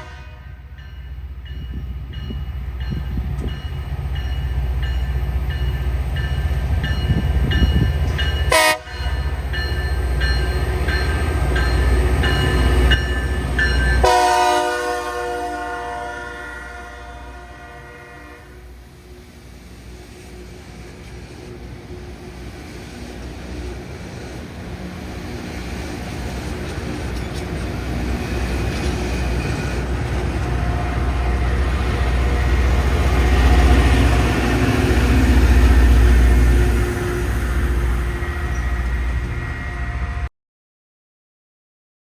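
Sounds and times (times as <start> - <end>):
train horn blast: 0.0 - 0.8, 8.5 - 9.3, 14.0 - 18.8, 36.6 - 40.3
rail grinder train rumble: 0.0 - 40.3.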